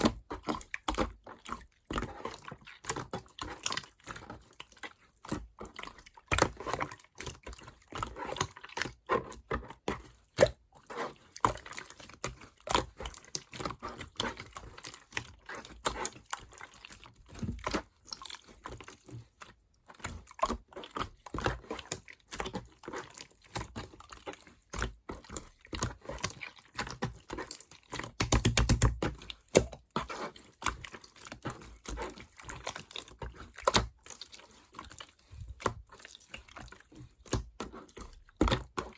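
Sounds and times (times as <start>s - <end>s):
slime squished by hand: 19.9s - 38.9s.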